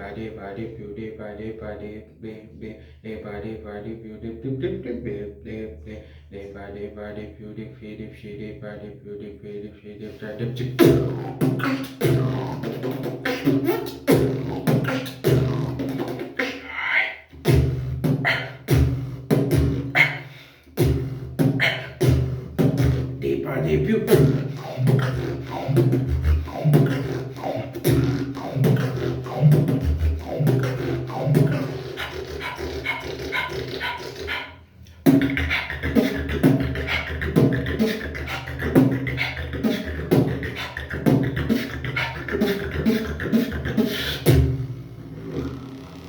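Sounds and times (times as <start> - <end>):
beatboxing: 9.2 - 46.0.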